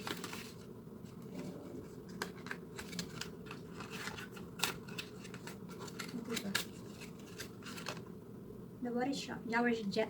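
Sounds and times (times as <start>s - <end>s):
packaging crinkling: 0.0s - 0.7s, 2.1s - 8.1s.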